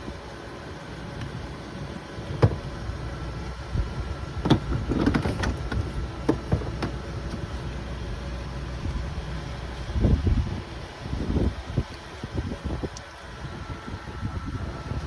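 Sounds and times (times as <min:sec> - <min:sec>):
steady low rumble: 0:00.0 - 0:15.0
gear clunking in storage compartment: 0:01.2 - 0:07.8.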